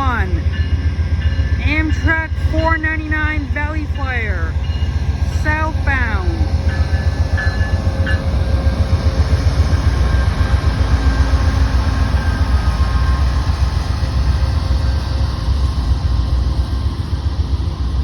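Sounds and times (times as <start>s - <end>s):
diesel train low rumble: 0.0s - 18.0s.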